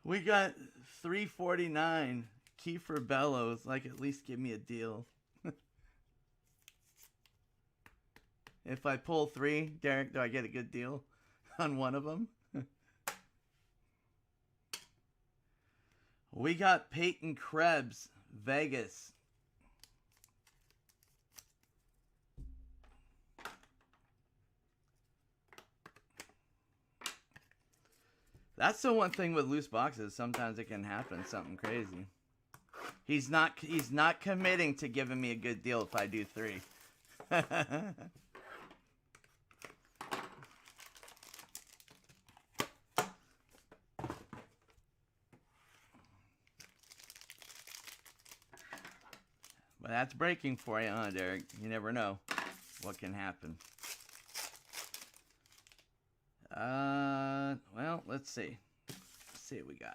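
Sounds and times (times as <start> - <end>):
packaging rustles and clicks: 39.5 - 42.6, 46.5 - 49.6, 53.6 - 55.8
plastic wrapping tearing and crinkling: 40.4 - 42.3, 46.6 - 48.8, 53.6 - 55.8.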